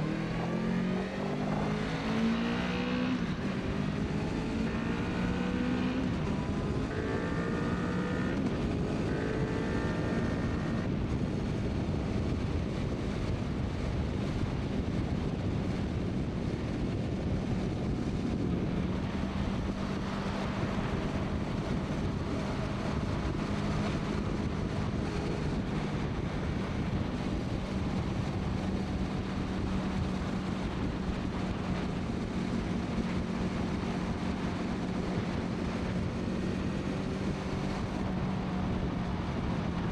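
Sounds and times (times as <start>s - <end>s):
motorcycle engine droning: 0.0s - 39.9s
wind noise on microphone: 0.0s - 39.9s.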